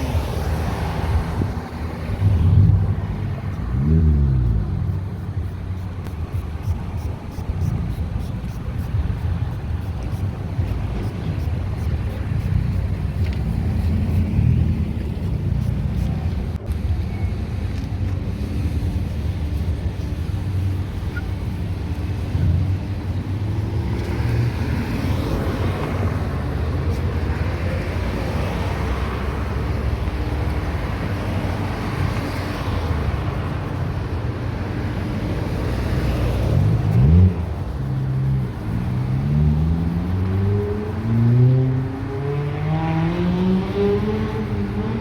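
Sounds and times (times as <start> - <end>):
road rumble: 0.0 - 45.0
car engine accelerating: 36.6 - 45.0.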